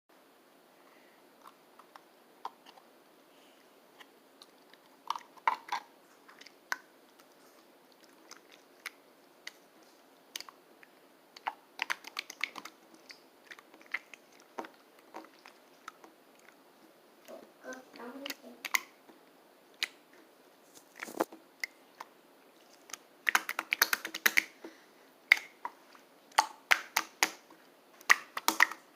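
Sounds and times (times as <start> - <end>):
slime squishing wet clicks: 10.4 - 10.6, 11.4 - 16.5, 17.9 - 18.9, 22.8 - 24.6, 25.3 - 27.4, 28.0 - 28.8.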